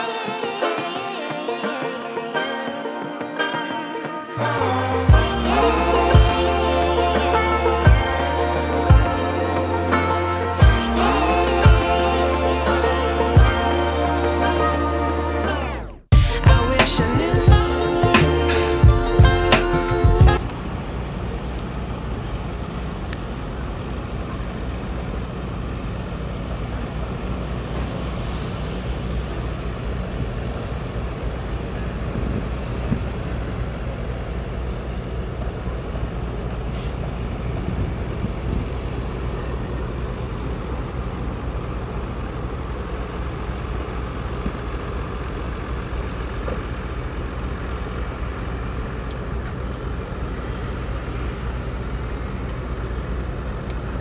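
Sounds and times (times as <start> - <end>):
heavy diesel machinery droning: 4.4 - 54.0.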